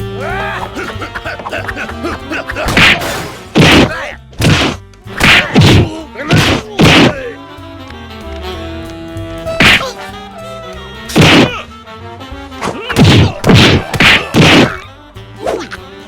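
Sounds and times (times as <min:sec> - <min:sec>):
background music: 0:00.0 - 0:16.0
cartoon punch hits: 0:02.6 - 0:07.2, 0:09.6 - 0:10.0, 0:11.1 - 0:11.6, 0:12.7 - 0:14.8.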